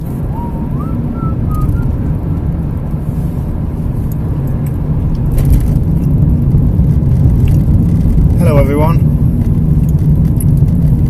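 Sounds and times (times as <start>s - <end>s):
car cabin rumble: 0.0s - 11.0s
faint whistle-like tone: 0.3s - 2.0s.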